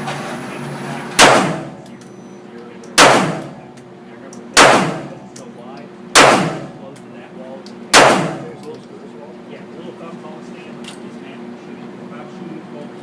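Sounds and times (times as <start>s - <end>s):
pistol shots echoing indoors: 1.2s - 1.8s, 3.0s - 3.6s, 4.6s - 5.2s, 6.2s - 6.8s, 7.9s - 8.6s
light metallic clinks: 1.8s - 3.0s, 8.6s - 9.9s.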